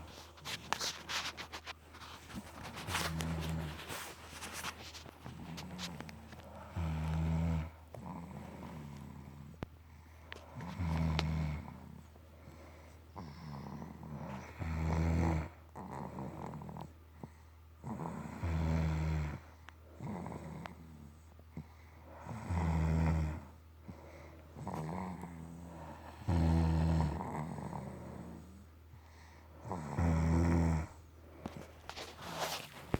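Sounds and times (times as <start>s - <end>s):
soft breathing: 0.0s - 14.6s, 23.8s - 29.7s, 31.0s - 32.9s
loud low snoring: 5.5s - 9.6s, 10.5s - 12.0s, 13.1s - 16.9s, 17.8s - 21.2s, 22.2s - 23.6s, 24.6s - 28.7s, 29.6s - 31.0s.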